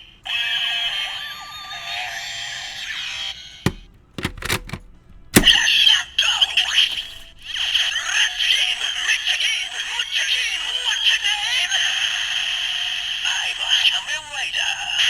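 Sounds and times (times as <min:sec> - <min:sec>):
plastic clicks: 0:03.7 - 0:07.5.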